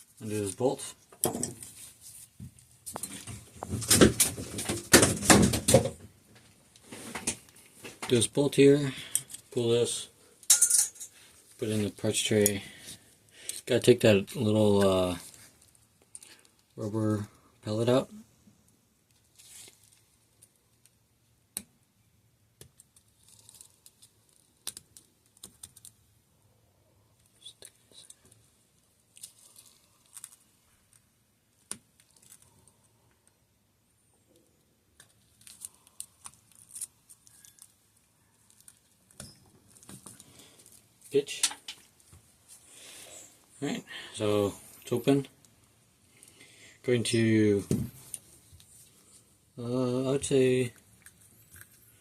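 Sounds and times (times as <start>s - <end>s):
metallic tool clicks and clatter: 10.4s - 11.2s
soft hisses: 40.2s - 52.0s.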